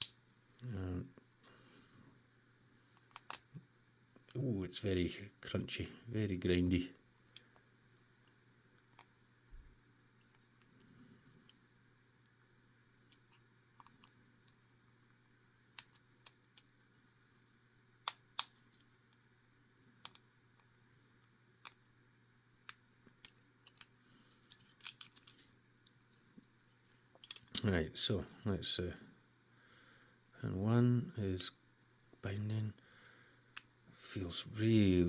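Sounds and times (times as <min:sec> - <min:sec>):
lock pick clicking and scraping: 0:03.0 - 0:03.6, 0:15.8 - 0:16.7, 0:18.0 - 0:18.9, 0:22.7 - 0:25.4.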